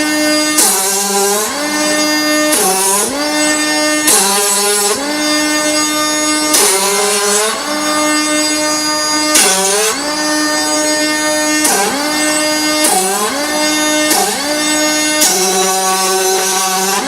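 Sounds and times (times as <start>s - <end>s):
pneumatic grinder whining: 0.0s - 17.0s.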